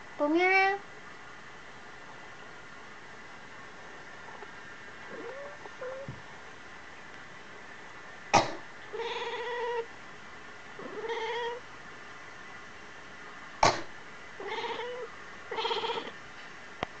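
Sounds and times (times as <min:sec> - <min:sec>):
cat meowing: 0:05.1 - 0:06.2, 0:08.9 - 0:09.9, 0:10.8 - 0:11.6, 0:14.4 - 0:16.1.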